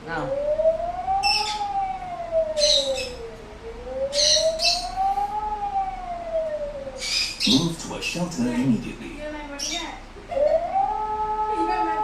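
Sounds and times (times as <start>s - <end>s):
wailing warning siren: 0.0s - 7.8s, 10.2s - 12.0s
birds chirping: 0.0s - 12.0s.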